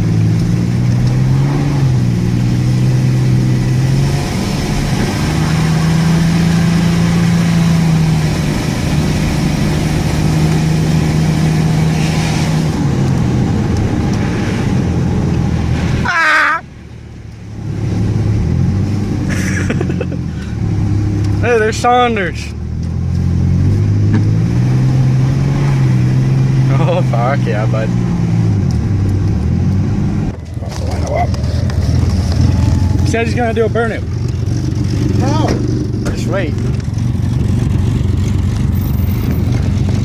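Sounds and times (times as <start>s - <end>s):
pickup truck engine running: 30.3s - 40.0s.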